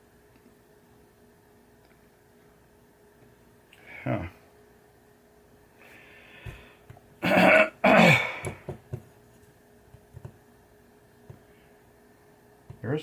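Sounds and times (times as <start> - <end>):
man clearing his throat: 7.2 - 8.4.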